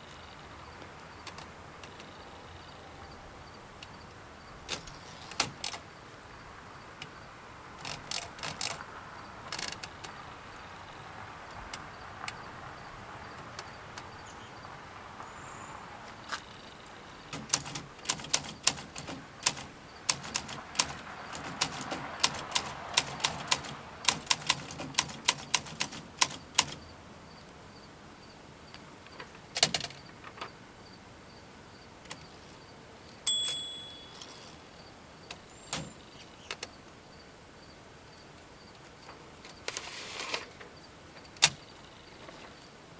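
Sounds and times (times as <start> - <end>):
typewriter keystrokes: 4.7 - 5.8, 7.8 - 8.8, 17.3 - 26.8, 29.6 - 30.0
short ringing tone: 33.3 - 34.5.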